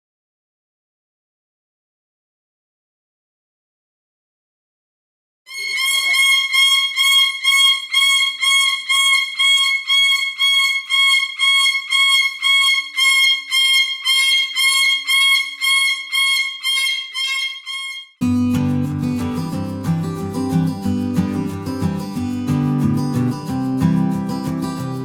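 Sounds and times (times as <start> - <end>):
parrot screaming: 5.5 - 18.0.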